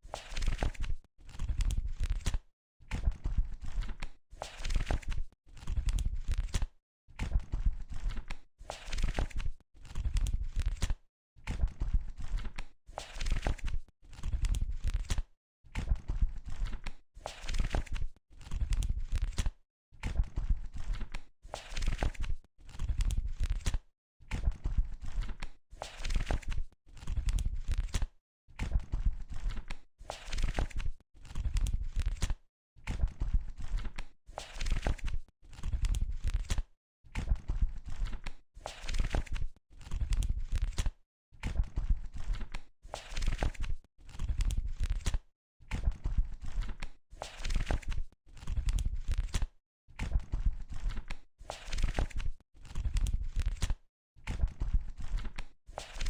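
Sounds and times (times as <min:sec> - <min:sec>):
book pages being flipped: 0:00.1 - 0:02.4, 0:03.6 - 0:06.7, 0:07.9 - 0:11.0, 0:12.2 - 0:15.2, 0:16.5 - 0:19.5, 0:20.7 - 0:23.8, 0:25.0 - 0:28.1, 0:29.3 - 0:32.4, 0:33.6 - 0:36.7, 0:37.8 - 0:41.0, 0:42.1 - 0:56.0.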